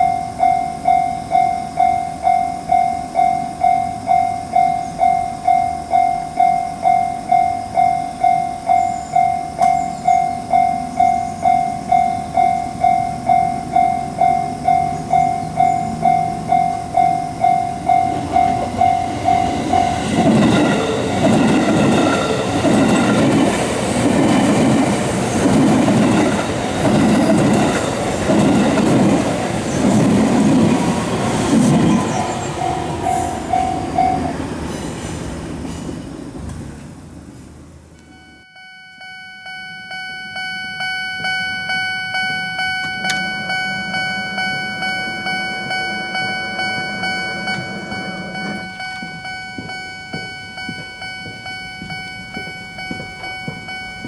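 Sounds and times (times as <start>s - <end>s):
level crossing warning bell: 0.0s - 34.6s, 38.0s - 54.0s
train wheels clacking over rail joints: 11.4s - 37.0s.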